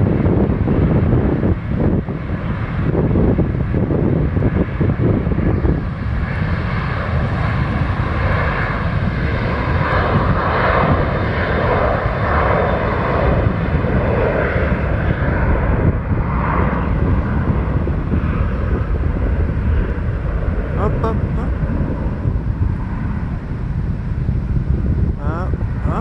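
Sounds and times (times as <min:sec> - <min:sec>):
jet engines at takeoff power: 0:00.0 - 0:26.0.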